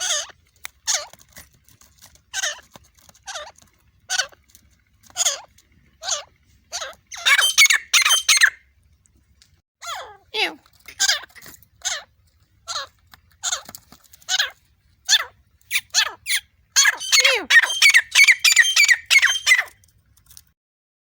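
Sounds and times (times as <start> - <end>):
partridge calling: 5.2 - 8.6, 14.3 - 19.8.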